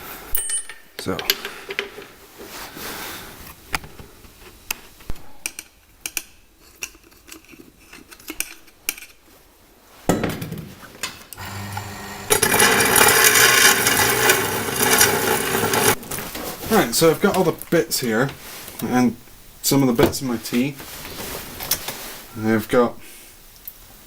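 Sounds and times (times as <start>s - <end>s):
saw cutting through padlock: 11.4s - 16.0s.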